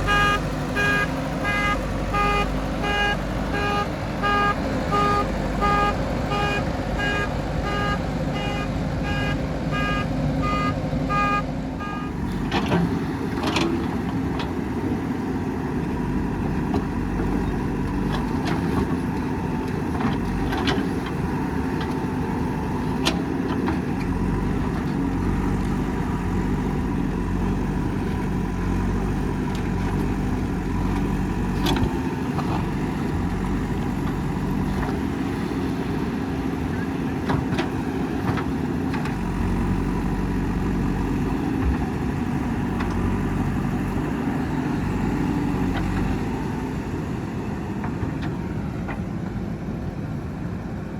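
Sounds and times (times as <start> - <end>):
diesel engine running: 0.0 - 50.9
beeping alarm: 0.1 - 12.1.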